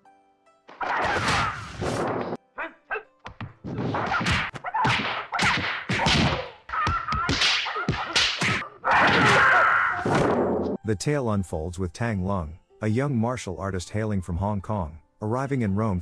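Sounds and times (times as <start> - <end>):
punch and kick impacts: 0.7 - 2.4, 3.3 - 10.5.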